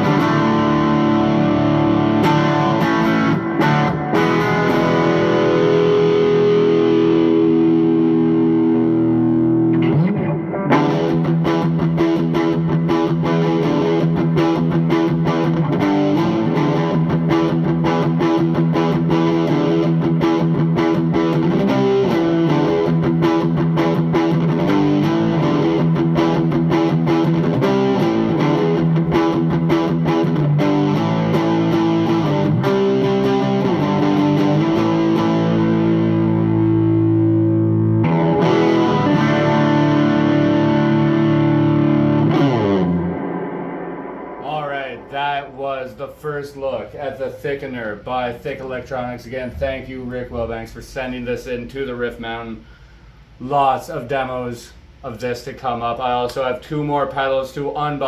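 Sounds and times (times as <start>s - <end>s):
distorted electric guitar: 0.0s - 45.6s.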